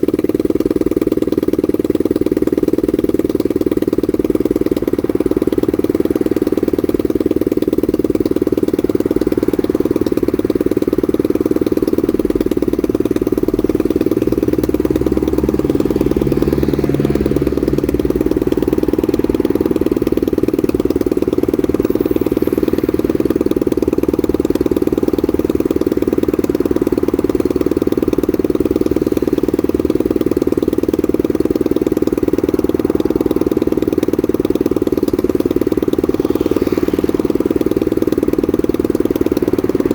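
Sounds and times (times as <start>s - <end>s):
minibike engine idling: 0.0s - 39.9s.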